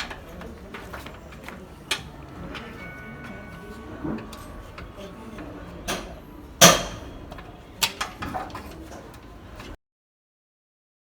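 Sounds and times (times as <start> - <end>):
tools knocking on metal: 1.9 - 8.8.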